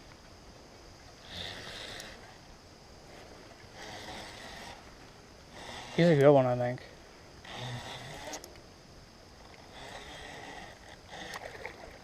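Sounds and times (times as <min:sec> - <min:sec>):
water splashing and swirling: 0:10.6 - 0:12.0.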